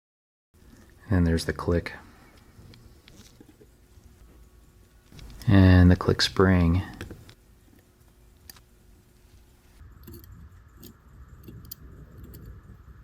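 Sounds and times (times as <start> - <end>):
small metallic tool clicks: 10.0 - 12.5.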